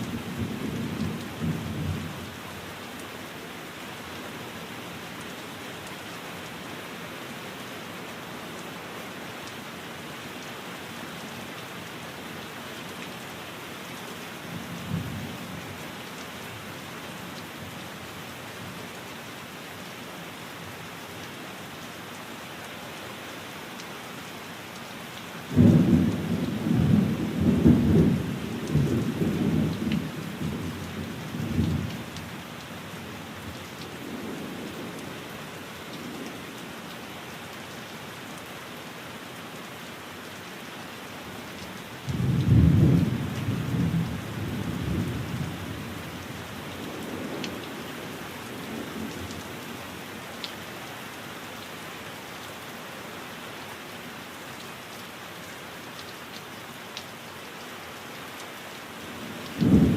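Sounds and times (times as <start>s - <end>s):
steady rain falling: 0.0s - 59.9s
thunder rumbling: 59.5s - 59.9s.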